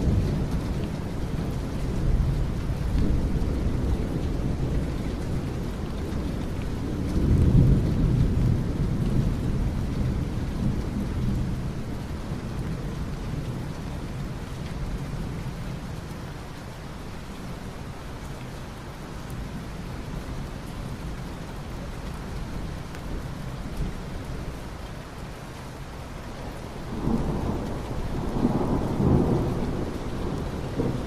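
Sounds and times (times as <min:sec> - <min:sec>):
steady rain: 0:00.0 - 0:31.0
thunder rolling: 0:26.9 - 0:31.0.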